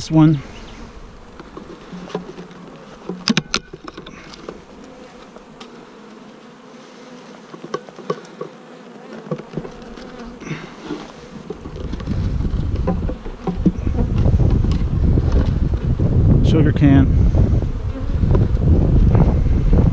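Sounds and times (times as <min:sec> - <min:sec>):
bees buzzing: 0:00.0 - 0:16.2, 0:17.1 - 0:19.9
sharp knocks: 0:12.7 - 0:14.1.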